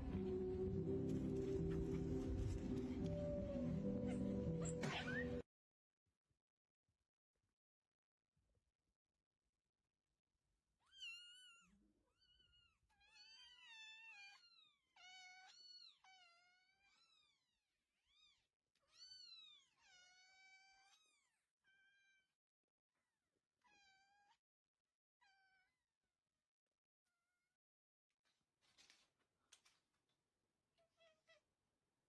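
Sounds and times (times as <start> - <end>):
cat meowing: 25.2 - 25.8.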